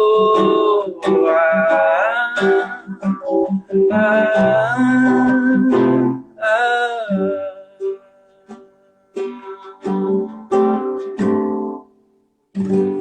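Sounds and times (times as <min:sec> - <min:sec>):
acoustic guitar strummed chords: 0:00.0 - 0:13.0.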